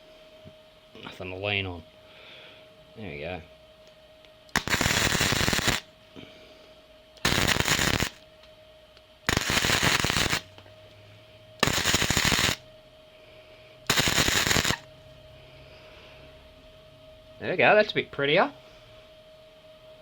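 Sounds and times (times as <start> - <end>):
faint steady hum: 0.0 - 20.0
welder arc crackling: 4.5 - 5.9, 7.2 - 8.2, 9.3 - 10.6, 11.6 - 12.6, 13.9 - 14.9.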